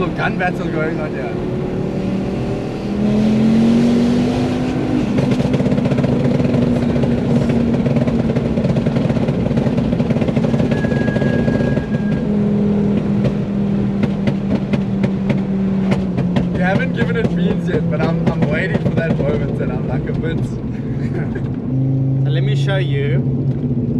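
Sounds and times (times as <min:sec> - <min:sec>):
car engine running hard: 0:00.0 - 0:23.9
exhaust pops: 0:04.5 - 0:21.7.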